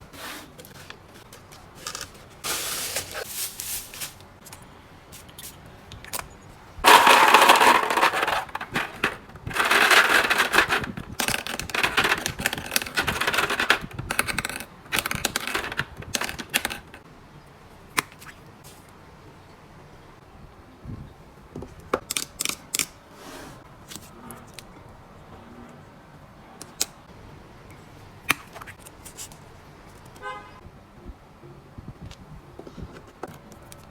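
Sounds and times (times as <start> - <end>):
plastic and paper crinkling: 0.5 - 4.6, 6.9 - 17.0
items clicking and tapping: 0.6 - 3.2, 5.3 - 17.0.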